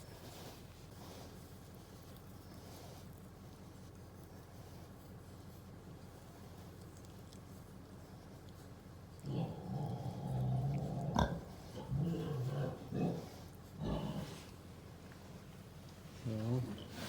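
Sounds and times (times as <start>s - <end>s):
pig grunting: 9.2s - 14.5s.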